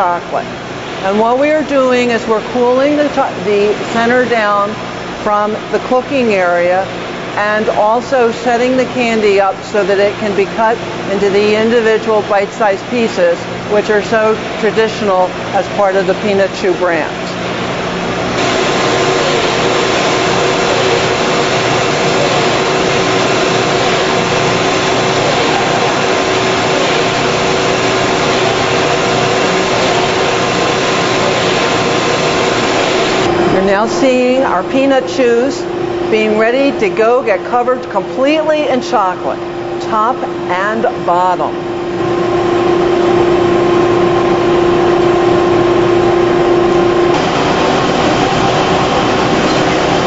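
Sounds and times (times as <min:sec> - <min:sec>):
factory machinery running: 0:00.0 - 0:50.0
machinery mechanical rush: 0:18.3 - 0:35.4, 0:43.1 - 0:50.0.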